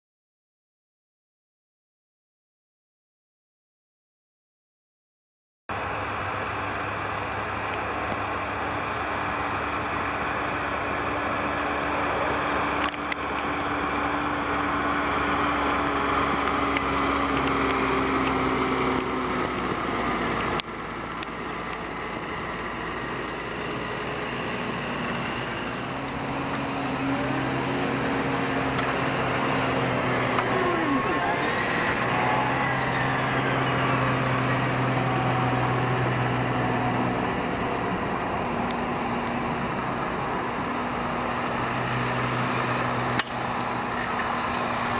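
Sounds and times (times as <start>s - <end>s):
tractor engine under load: 5.7s - 44.9s.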